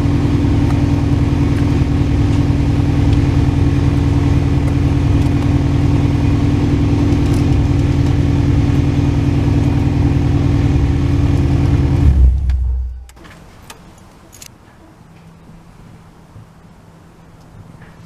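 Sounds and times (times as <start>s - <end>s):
car engine running: 0.0s - 13.2s.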